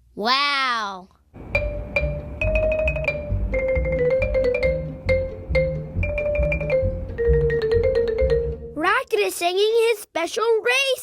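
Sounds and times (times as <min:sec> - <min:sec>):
steady bass beat: 0:01.4 - 0:08.7
xylophone-like mallet notes: 0:01.4 - 0:08.8.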